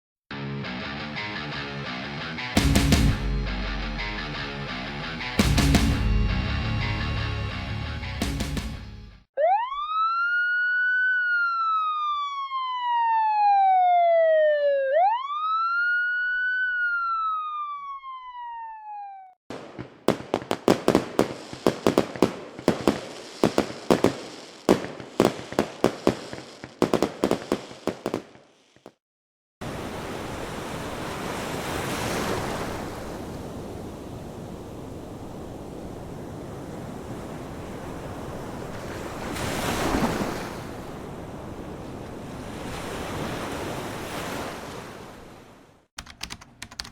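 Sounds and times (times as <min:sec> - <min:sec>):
wailing siren: 0:09.4 - 0:19.4
sharp bangs: 0:19.5 - 0:28.9
ocean surf: 0:29.6 - 0:45.7.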